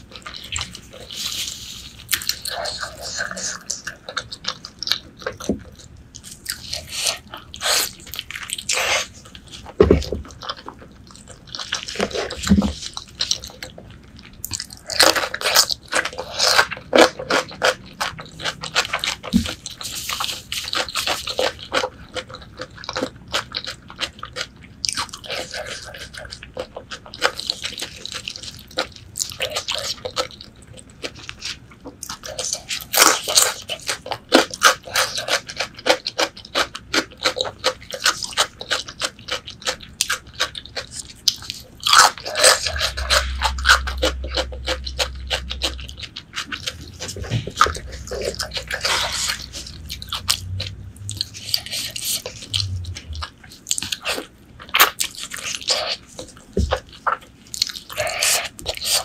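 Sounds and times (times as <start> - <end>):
biting and crunching: 0.0 - 59.0
close chewing with mouth clicks: 0.0 - 59.0.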